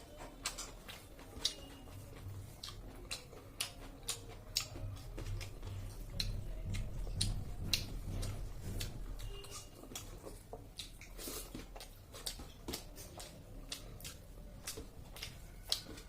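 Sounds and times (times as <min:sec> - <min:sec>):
chewing clicks and smacks: 0:00.0 - 0:16.0
low pulsing chewing thud: 0:04.7 - 0:09.3.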